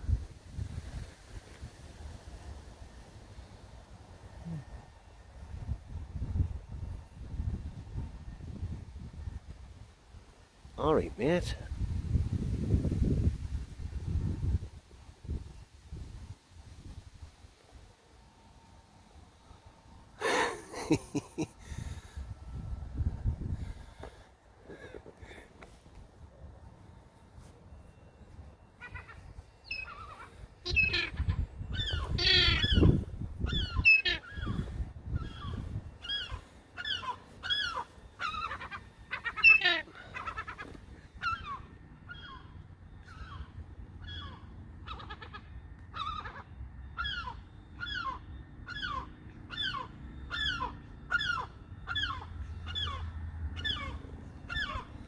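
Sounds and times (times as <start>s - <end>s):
young bird calling: 28.8s - 55.0s.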